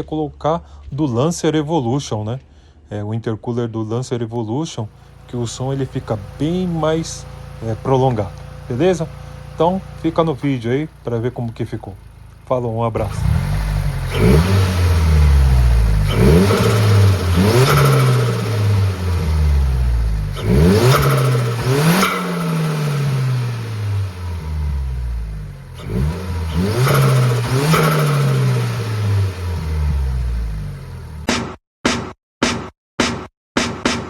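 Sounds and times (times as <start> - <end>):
car engine revving: 5.0 - 31.3.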